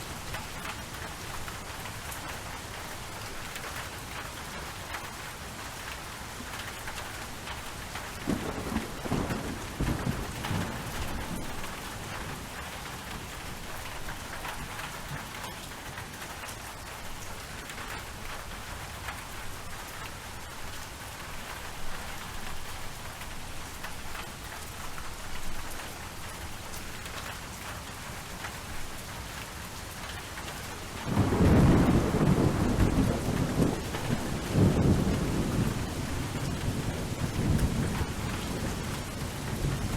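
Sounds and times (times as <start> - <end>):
steady rain: 0.0 - 39.9
thunder rumbling: 8.2 - 12.6, 31.0 - 39.9.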